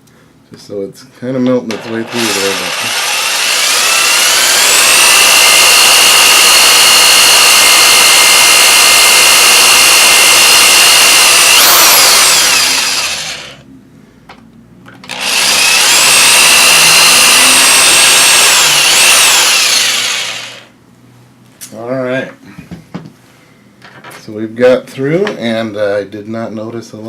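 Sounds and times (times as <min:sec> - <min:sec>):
power drill motor whine: 0:01.7 - 0:13.6, 0:15.0 - 0:20.7.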